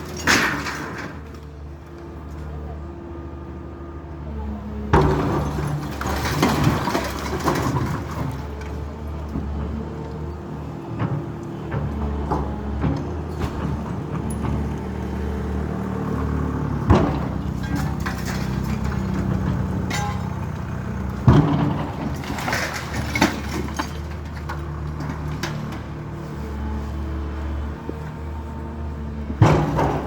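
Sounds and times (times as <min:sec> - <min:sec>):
crashes of breaking material: 0:21.3 - 0:25.5.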